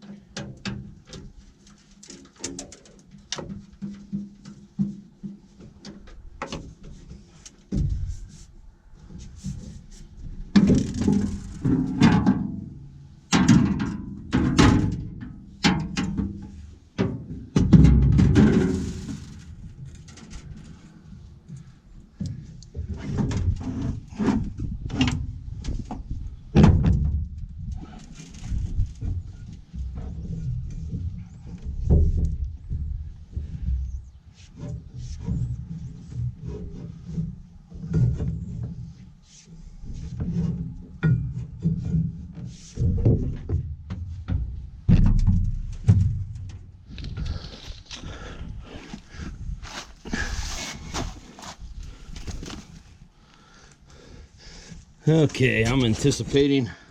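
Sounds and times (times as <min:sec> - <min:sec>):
knocks and scrapes of tools: 0:00.1 - 0:12.6, 0:15.8 - 0:53.0
sheet metal clunks and knocks: 0:13.3 - 0:18.9, 0:42.8 - 0:46.7
heavy thump: 0:42.8 - 0:47.4
wind buffeting microphone: 0:46.8 - 0:50.4.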